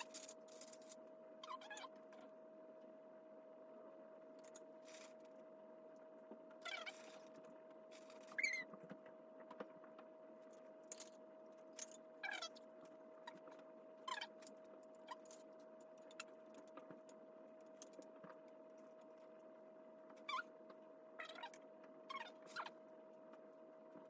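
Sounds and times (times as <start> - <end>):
small parts clicking and rattling: 0.0 - 2.3, 10.4 - 19.4
faint steady hum: 0.0 - 24.0
brief squeaks: 8.1 - 8.8.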